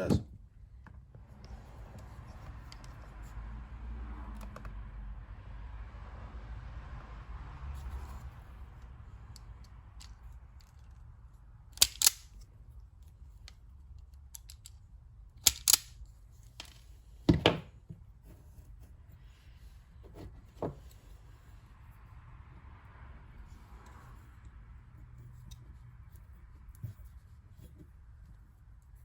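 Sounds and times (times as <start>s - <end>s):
wire stripper snipping: 11.8s - 12.3s, 15.4s - 15.9s.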